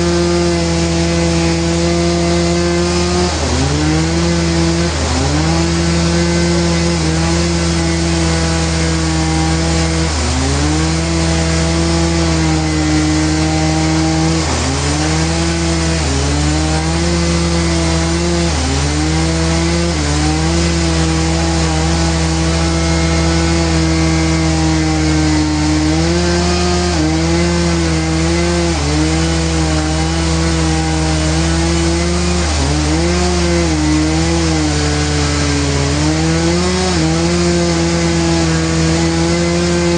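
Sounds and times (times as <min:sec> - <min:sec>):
sawmill saw cutting log: 0:00.0 - 0:39.9.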